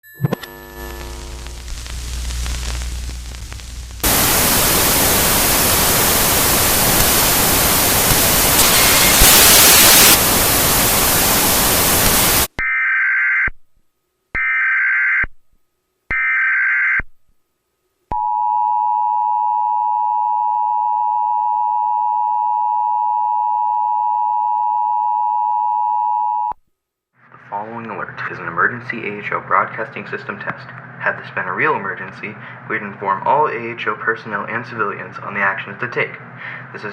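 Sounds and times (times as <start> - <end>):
loud static hiss: 0.6 - 12.5
screeching data tones: 4.0 - 12.5.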